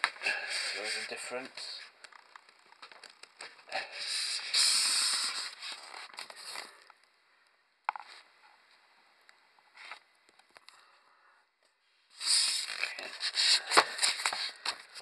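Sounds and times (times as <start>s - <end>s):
packaging scraping and rustling: 12.2s - 15.0s.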